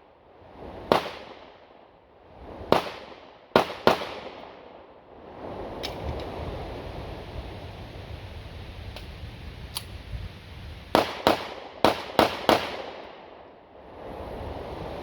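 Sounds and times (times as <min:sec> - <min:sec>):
pistol shots: 0:00.9 - 0:01.5, 0:02.7 - 0:04.7, 0:10.9 - 0:13.2
faint sharp ticks: 0:08.9 - 0:09.1, 0:09.7 - 0:10.0.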